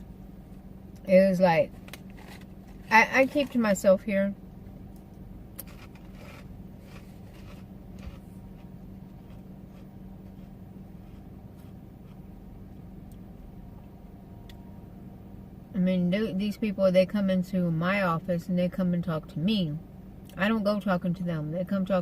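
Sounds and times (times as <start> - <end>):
low hum in car cabin: 0.0 - 22.0
person eating chips: 5.6 - 12.2.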